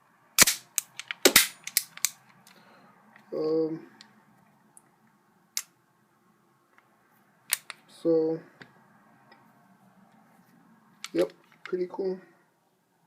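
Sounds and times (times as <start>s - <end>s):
pistol slide metallic clacks: 0.4s - 2.3s, 7.5s - 7.8s.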